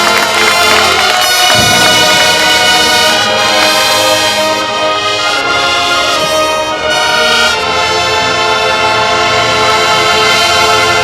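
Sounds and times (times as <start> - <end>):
brass sustained chords: 0.0 - 11.0
marching band playing: 0.0 - 11.0.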